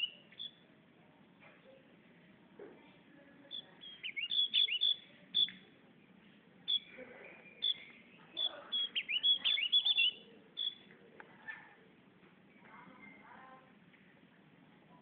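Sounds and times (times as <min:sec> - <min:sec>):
bird singing chirps and whistles: 0:00.0 - 0:00.6, 0:03.5 - 0:05.7, 0:06.7 - 0:10.9.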